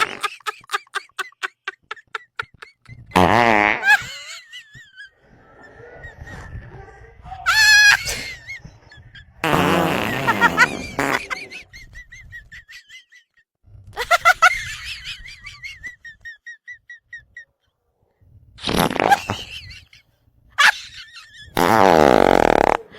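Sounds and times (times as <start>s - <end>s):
fake fart sounds: 0.0s - 0.3s, 3.0s - 4.1s, 7.5s - 8.7s, 9.4s - 11.8s, 18.6s - 19.8s, 21.4s - 22.9s.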